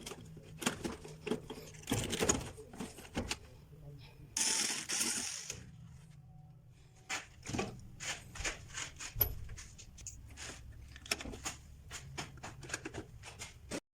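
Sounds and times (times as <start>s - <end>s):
electrical contactor humming: 0.0s - 9.3s.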